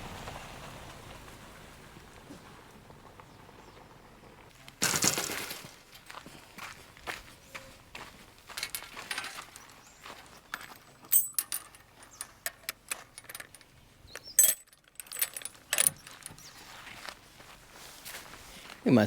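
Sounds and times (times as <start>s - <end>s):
small hard objects clinking: 4.8s - 5.8s, 8.4s - 16.8s.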